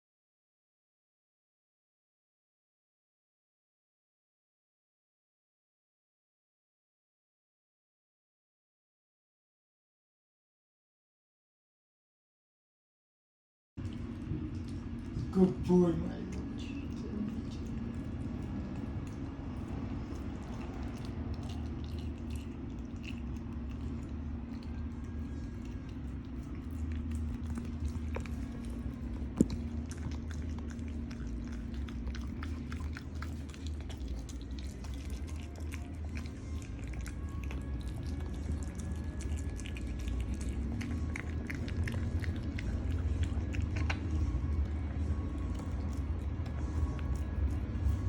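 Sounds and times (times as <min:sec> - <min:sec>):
dog chewing and crunching: 0:13.8 - 0:48.0
steady low hum: 0:13.8 - 0:48.0.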